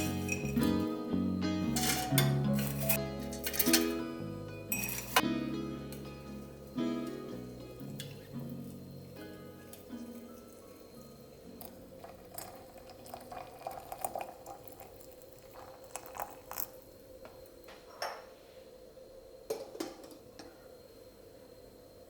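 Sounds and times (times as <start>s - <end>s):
dishes and utensils clinking: 0.0s - 0.9s, 1.6s - 4.1s, 4.7s - 5.4s, 7.9s - 8.3s
faint steady hum: 3.8s - 22.0s.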